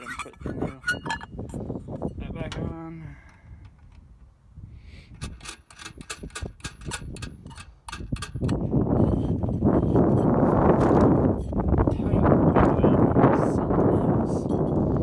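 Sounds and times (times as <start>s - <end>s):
plastic parts clicking and tapping: 5.2s - 8.6s.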